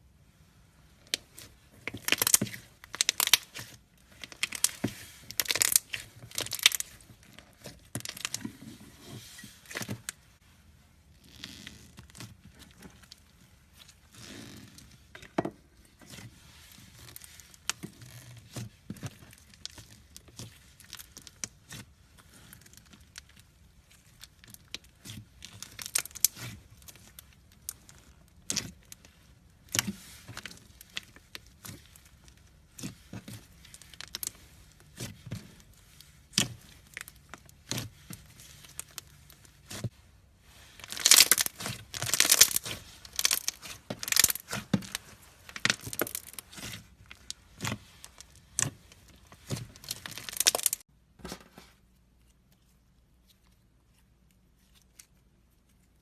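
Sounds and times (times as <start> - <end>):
crinkling and tearing: 1.0 - 10.4, 16.0 - 50.9.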